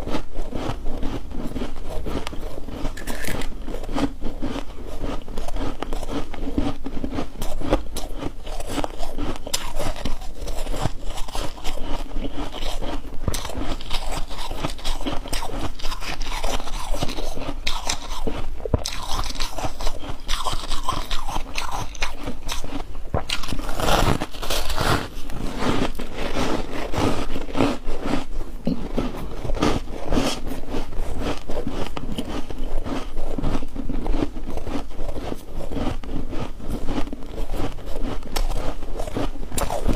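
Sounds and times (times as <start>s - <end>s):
ice being chewed crunching: 0.0s - 39.9s.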